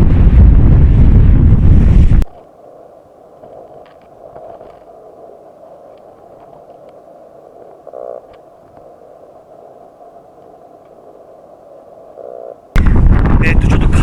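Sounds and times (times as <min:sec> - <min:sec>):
faint scattered clicks: 0:02.2 - 0:12.8.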